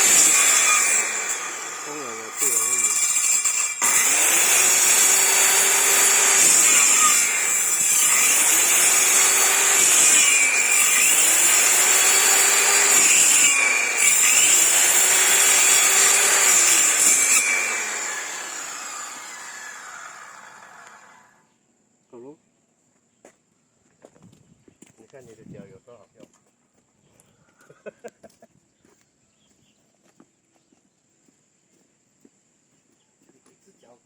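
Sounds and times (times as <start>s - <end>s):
power tool cutting wood: 0.0s - 21.4s.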